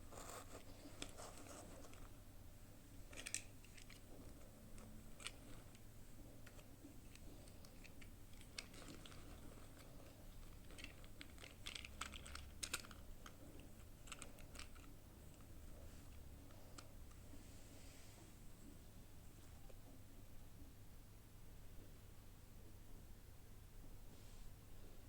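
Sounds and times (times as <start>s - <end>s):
plastic toy parts clicking: 3.1s - 4.1s, 6.4s - 9.8s, 10.4s - 13.4s.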